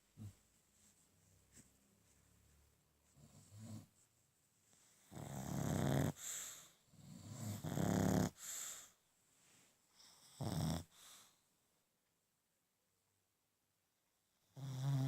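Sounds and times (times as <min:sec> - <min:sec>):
person snoring: 0:05.1 - 0:06.2, 0:07.1 - 0:08.4.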